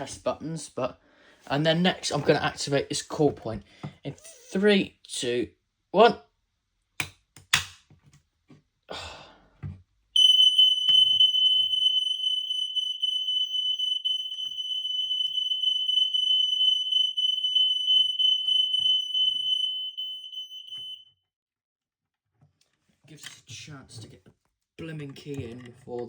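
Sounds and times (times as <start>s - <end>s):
smoke alarm high-pitched tone: 10.2s - 21.1s.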